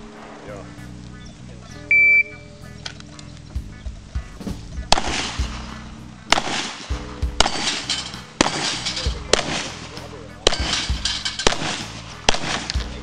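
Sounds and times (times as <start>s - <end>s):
background music: 0.0s - 13.0s
handgun shots echoing: 4.9s - 5.4s, 6.3s - 12.9s.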